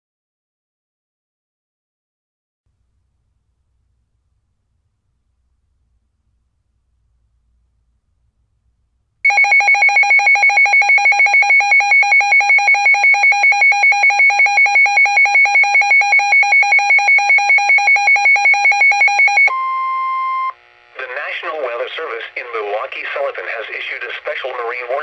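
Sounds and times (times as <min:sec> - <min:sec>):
steady single alarm tone: 0:09.3 - 0:20.5
weather radio alarm beeping: 0:09.3 - 0:20.5.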